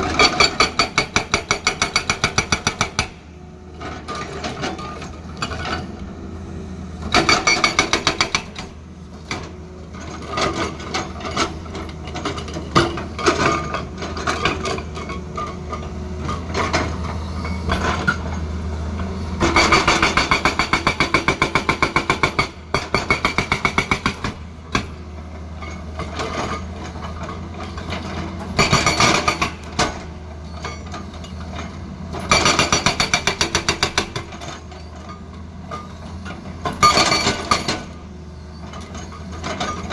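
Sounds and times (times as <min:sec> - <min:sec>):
hydraulic breaker hammering stone: 0:00.0 - 0:03.3, 0:07.1 - 0:08.8, 0:19.4 - 0:25.0, 0:28.6 - 0:30.2, 0:32.2 - 0:34.7, 0:36.6 - 0:38.0
excavator engine running: 0:00.0 - 0:39.9.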